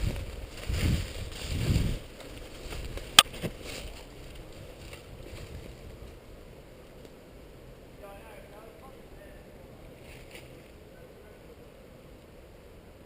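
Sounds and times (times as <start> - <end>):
microphone handling rumble: 0.0 - 6.3
wind buffeting microphone: 0.0 - 6.7.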